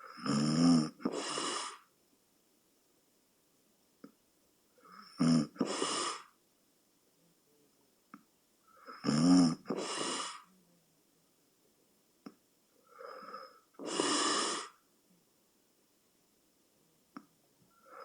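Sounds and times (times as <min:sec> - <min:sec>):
person snoring: 0:00.0 - 0:01.9, 0:04.8 - 0:06.3, 0:08.8 - 0:10.5, 0:12.9 - 0:14.8.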